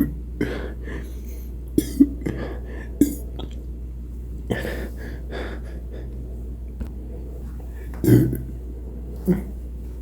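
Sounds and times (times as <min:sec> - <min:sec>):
person breathing: 0:00.4 - 0:01.6, 0:02.3 - 0:03.0, 0:04.5 - 0:06.4
person's short throat sounds: 0:08.0 - 0:08.5.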